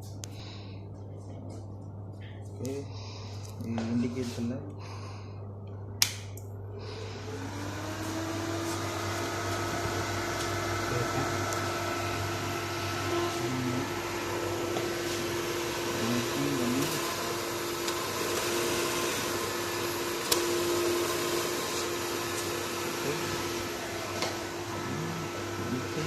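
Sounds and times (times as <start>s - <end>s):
mechanical whir with hum: 0.0s - 26.0s.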